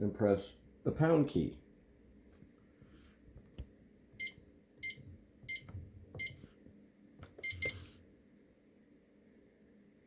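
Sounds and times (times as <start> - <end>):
keypad beeps: 4.2 - 6.5, 7.4 - 7.8.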